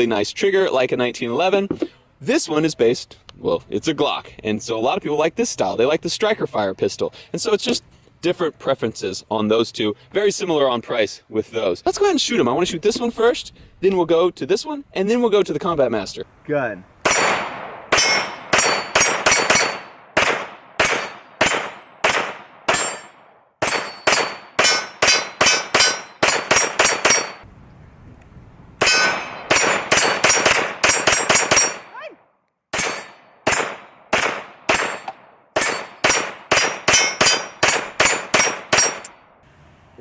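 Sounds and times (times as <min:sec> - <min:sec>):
pistol shots: 0:17.0 - 0:27.4, 0:28.8 - 0:31.9, 0:32.7 - 0:39.1
metallic ring: 0:20.8 - 0:27.4, 0:28.8 - 0:29.8, 0:32.8 - 0:33.9, 0:34.8 - 0:39.1.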